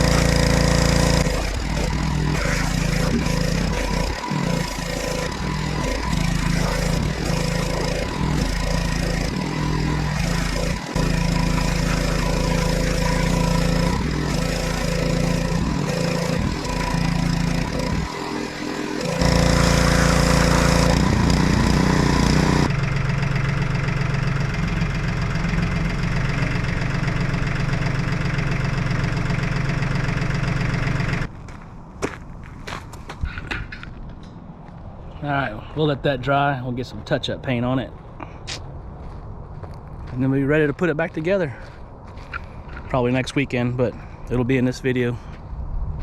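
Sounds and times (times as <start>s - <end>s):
pressure washer engine running: 0.0s - 31.3s.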